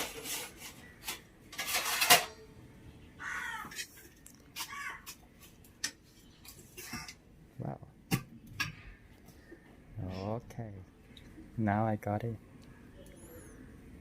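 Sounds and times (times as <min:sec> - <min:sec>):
kitchen utensils clinking: 0:00.0 - 0:02.6
crow cawing: 0:03.2 - 0:03.8, 0:04.6 - 0:05.1.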